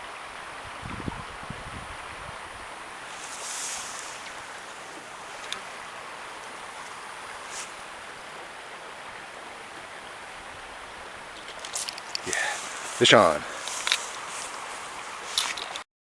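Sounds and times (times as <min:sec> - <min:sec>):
stream water rushing: 0:00.0 - 0:15.8
brief high hiss: 0:12.2 - 0:15.6.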